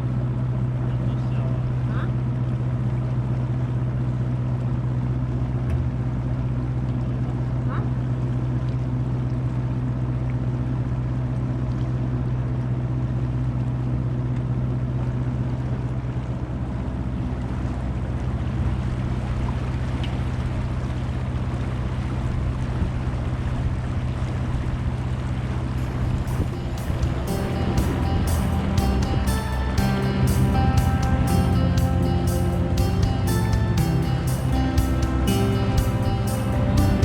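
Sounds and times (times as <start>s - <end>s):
boat motor humming: 0.0s - 37.0s
water and wind hiss: 25.6s - 37.0s.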